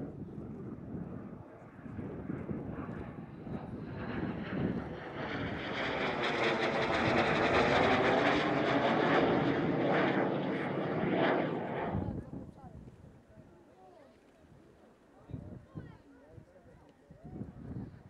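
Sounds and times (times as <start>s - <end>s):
jet aircraft flying past: 0.1s - 12.2s.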